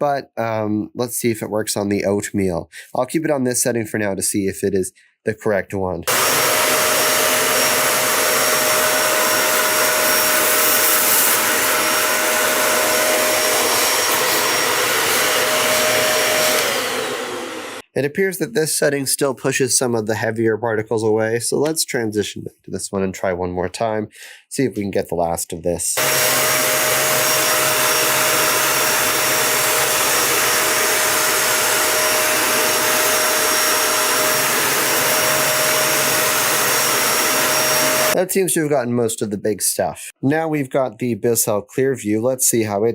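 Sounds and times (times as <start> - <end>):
vacuum cleaner running on carpet: 6.1 - 17.8, 26.0 - 38.2
vacuum cleaner winding down: 6.1 - 17.8, 26.0 - 38.2.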